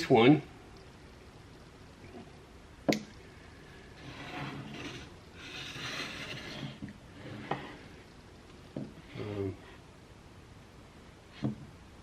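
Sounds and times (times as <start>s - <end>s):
hand plane scraping and rustling: 4.0s - 7.9s.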